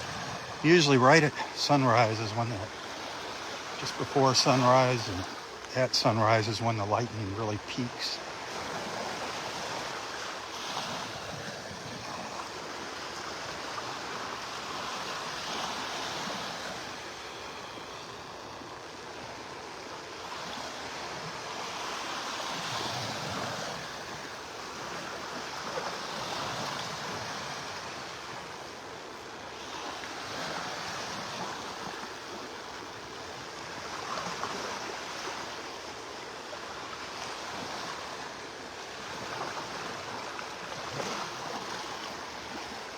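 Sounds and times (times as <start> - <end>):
surf washing onto beach: 0.0 - 42.9.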